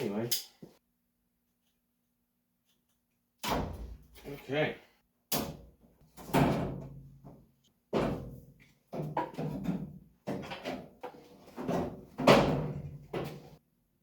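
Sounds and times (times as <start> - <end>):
sharp knocks and thuds: 6.2 - 10.9.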